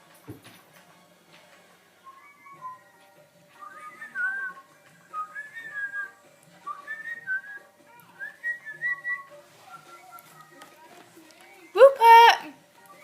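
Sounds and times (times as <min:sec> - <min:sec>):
person whistling: 0:02.0 - 0:03.0, 0:03.6 - 0:07.6, 0:08.2 - 0:10.5.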